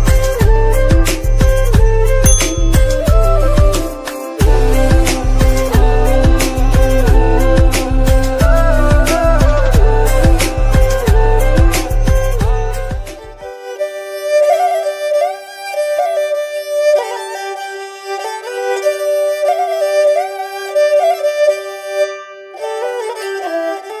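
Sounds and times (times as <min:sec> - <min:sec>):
lilting melody with vibrato: 0:00.0 - 0:24.0
steady held note: 0:02.2 - 0:08.4.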